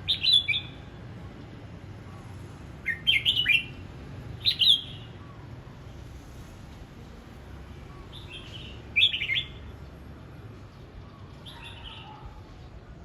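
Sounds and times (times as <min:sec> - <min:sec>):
bird singing clear notes: 0:00.0 - 0:00.8, 0:04.4 - 0:05.2, 0:08.1 - 0:09.7.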